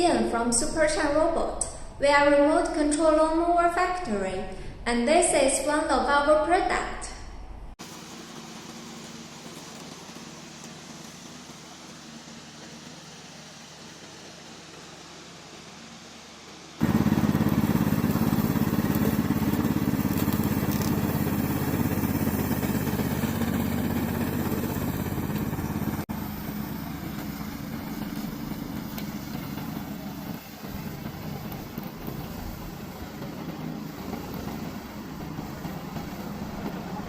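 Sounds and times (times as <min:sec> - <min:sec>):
lawn mower engine humming: 0:07.8 - 0:37.0.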